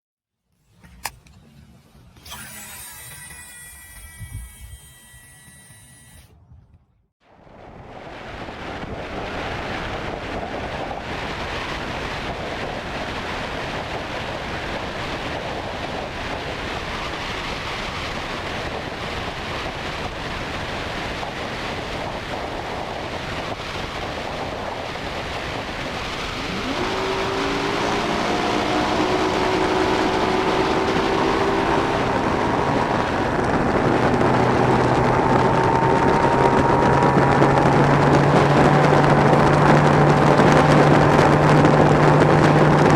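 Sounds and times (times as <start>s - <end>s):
low engine hum: 0.5s - 42.9s
boat engine rising pitch: 1.8s - 7.0s, 25.4s - 42.9s
wind and water rushing: 7.3s - 42.9s.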